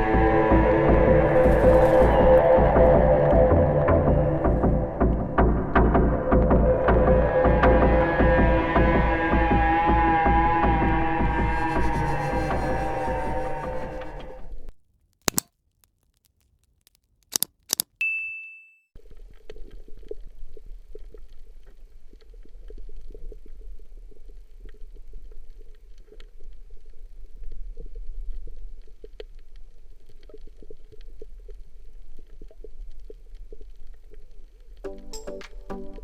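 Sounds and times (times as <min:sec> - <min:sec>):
underwater rumble of moving water: 0:00.0 - 0:14.7, 0:19.1 - 0:34.8
small crackling clicks: 0:15.1 - 0:18.0, 0:27.8 - 0:35.6.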